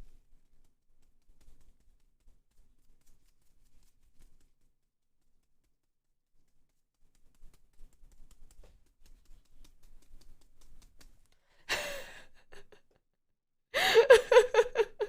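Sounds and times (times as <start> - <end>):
person gasping in-breath: 11.6 - 12.4, 13.8 - 14.1.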